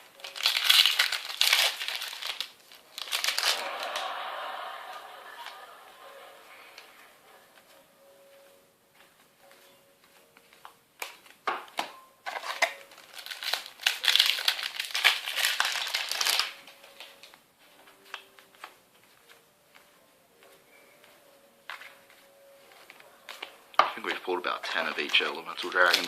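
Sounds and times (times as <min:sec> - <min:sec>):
foil wrapper crinkling: 0:00.0 - 0:04.1, 0:12.3 - 0:17.4, 0:24.0 - 0:26.0.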